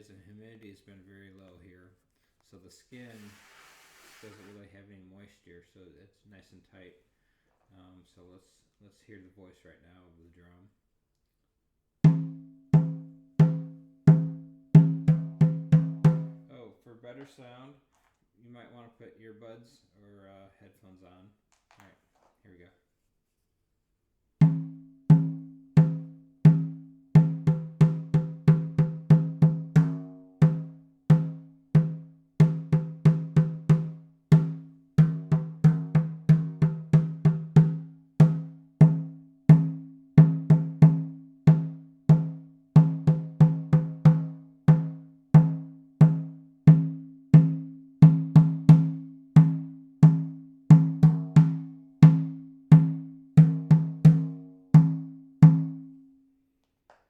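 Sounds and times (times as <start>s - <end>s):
frame drum booming beats: 12.1s - 16.5s, 24.4s - 55.8s.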